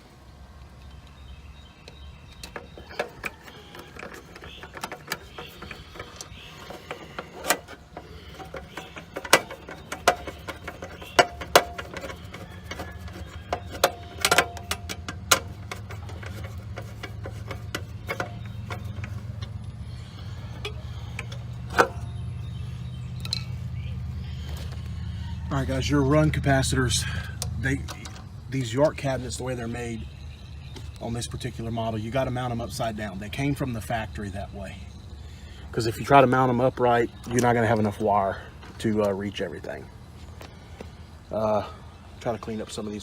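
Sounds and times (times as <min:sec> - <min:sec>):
low steady hum: 0:00.0 - 0:43.0
metal tools clicking and tapping: 0:01.8 - 0:22.4.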